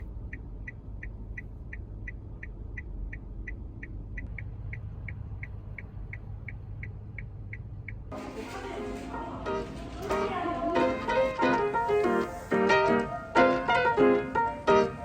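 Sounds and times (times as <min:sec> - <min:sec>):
turn signal ticking: 0:00.0 - 0:08.2
car engine rumble: 0:00.0 - 0:15.0.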